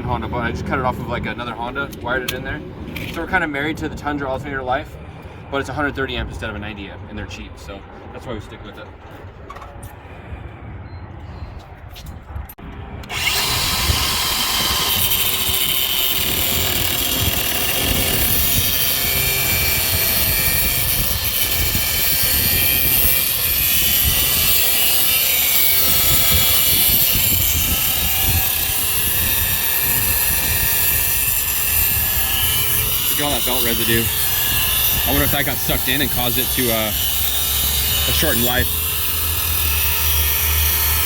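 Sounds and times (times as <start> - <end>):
power tool grinding: 12.8 - 41.0.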